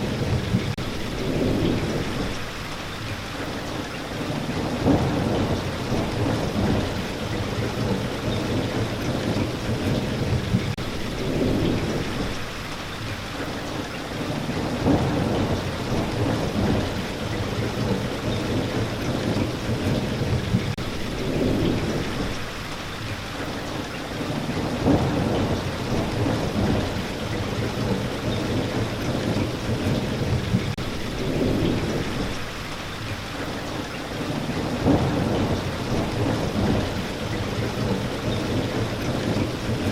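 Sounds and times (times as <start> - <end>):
thunder rumbling: 0.0 - 2.8, 4.2 - 12.6, 14.2 - 22.7, 24.2 - 33.1, 34.2 - 39.9
steady rain: 0.0 - 39.9.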